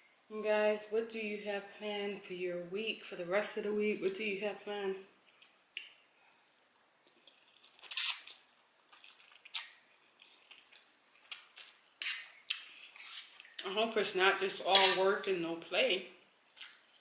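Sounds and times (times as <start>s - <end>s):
cutlery scraping a plate: 12.0s - 13.4s, 14.7s - 15.1s.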